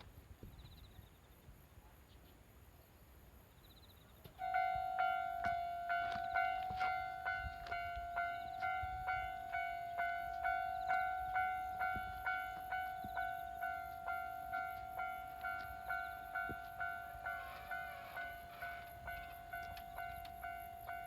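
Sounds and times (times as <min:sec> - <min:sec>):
level-crossing warning bell: 0:04.4 - 0:21.0.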